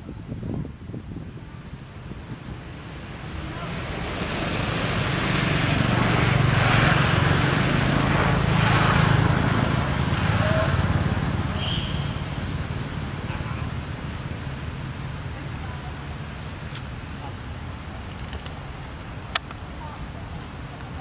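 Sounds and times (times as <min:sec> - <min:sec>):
motor vehicle passing by: 0:02.9 - 0:17.4.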